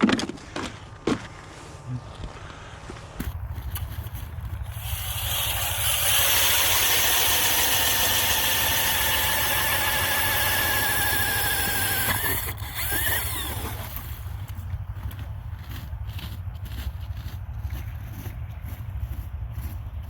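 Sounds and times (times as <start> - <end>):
small engine revving: 3.7 - 15.2.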